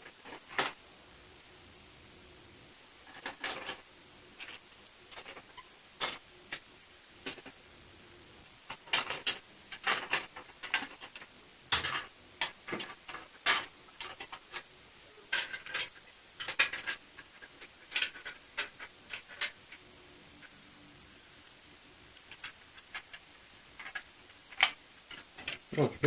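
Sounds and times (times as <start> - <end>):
plastic pieces clicking and tapping: 4.4 - 7.6, 8.7 - 14.7, 15.3 - 19.8, 22.2 - 25.7.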